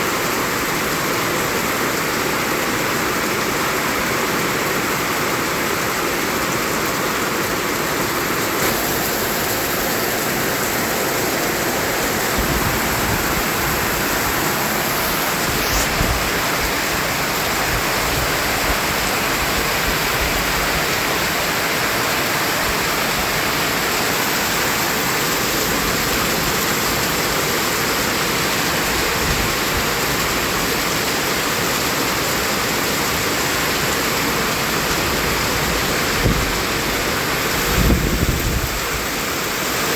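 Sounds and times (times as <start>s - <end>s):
white noise hiss: 8.4s - 29.2s, 32.3s - 39.9s.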